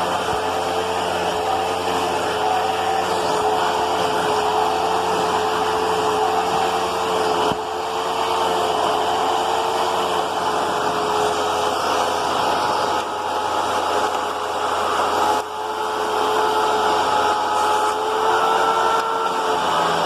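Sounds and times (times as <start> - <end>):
vacuum cleaner motor whine: 0.0 - 20.0.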